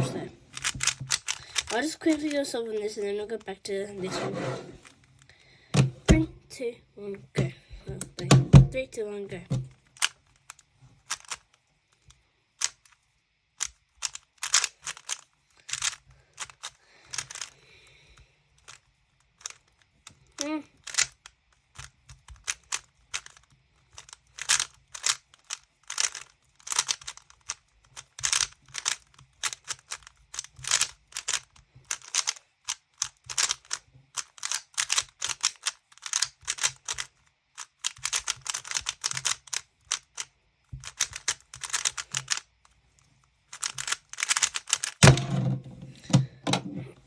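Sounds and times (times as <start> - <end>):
puzzle cube clicking turns: 0.0 - 3.5, 9.5 - 45.3
loud thump: 45.0 - 46.6.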